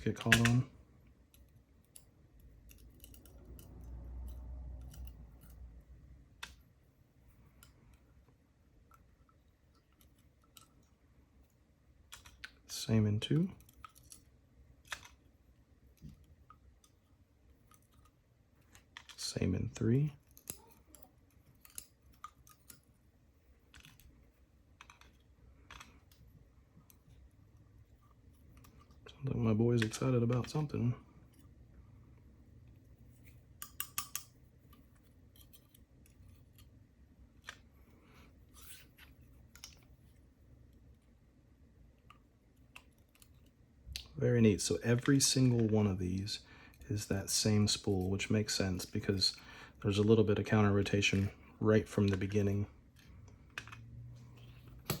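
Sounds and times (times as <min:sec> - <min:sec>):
small metal lock parts clicking: 0:00.0 - 0:00.7, 0:01.3 - 0:05.7, 0:12.1 - 0:12.6, 0:13.6 - 0:15.3, 0:20.2 - 0:23.0, 0:23.6 - 0:27.2, 0:33.5 - 0:36.7
small metal clicks and taps: 0:00.2 - 0:00.6, 0:24.8 - 0:26.2, 0:33.6 - 0:36.7.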